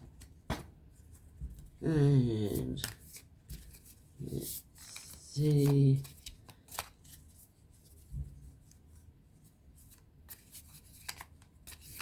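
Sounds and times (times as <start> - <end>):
cards rustling and clicking: 2.4 - 8.9, 9.8 - 12.0.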